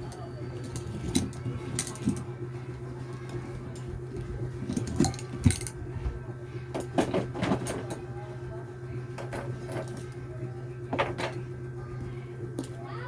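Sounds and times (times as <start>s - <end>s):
steady low hum: 0.0s - 13.0s
small tools clinking on surface: 4.6s - 5.8s.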